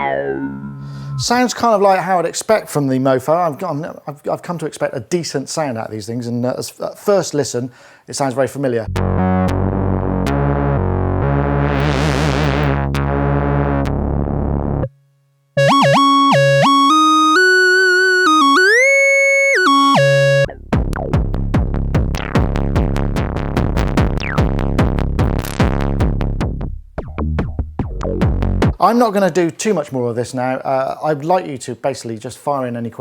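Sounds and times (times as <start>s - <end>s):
synth lead with gliding pitch: 0.0s - 1.2s, 15.6s - 20.6s
synth bass with filter sweep: 0.0s - 1.3s, 8.9s - 14.9s, 15.6s - 28.8s
rapid synth note run: 8.9s - 14.7s, 15.6s - 21.2s.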